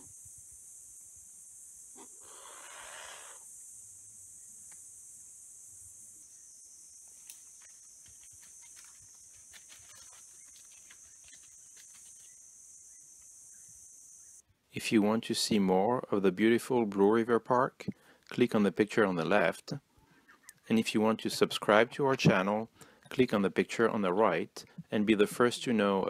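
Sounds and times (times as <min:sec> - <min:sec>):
rustle: 0:00.0 - 0:14.3
high-pitched insect chorus: 0:00.0 - 0:14.4.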